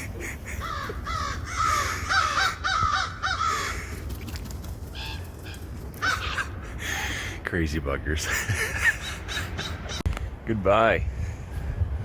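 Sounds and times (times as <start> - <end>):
ravens croaking: 0.0 - 7.4.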